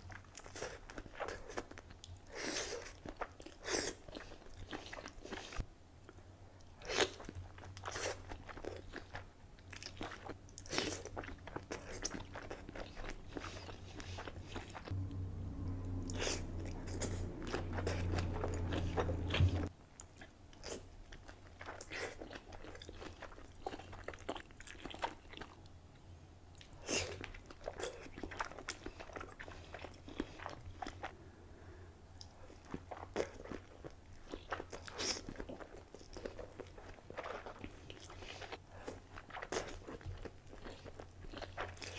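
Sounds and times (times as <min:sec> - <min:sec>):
wet chewing: 0:00.0 - 0:05.6, 0:06.6 - 0:25.7, 0:26.5 - 0:31.2, 0:32.2 - 0:41.9
low hum: 0:14.0 - 0:19.7.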